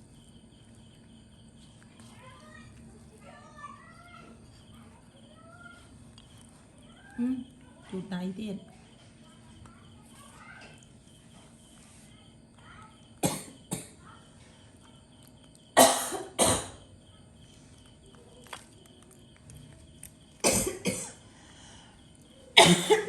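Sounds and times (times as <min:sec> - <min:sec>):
person coughing: 0:13.2 - 0:13.9, 0:15.8 - 0:16.8, 0:20.4 - 0:21.2, 0:22.6 - 0:23.0.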